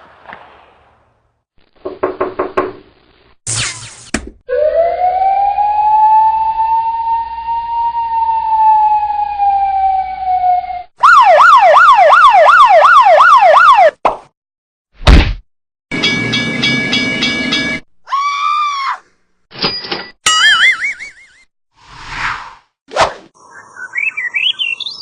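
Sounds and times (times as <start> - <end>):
siren fast yelp: 4.5 - 13.9
siren wailing: 4.5 - 14.0.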